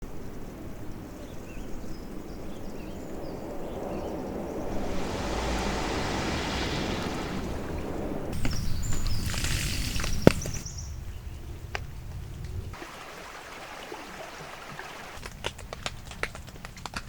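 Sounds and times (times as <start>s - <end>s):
outdoor rushing noise: 3.3s - 10.7s.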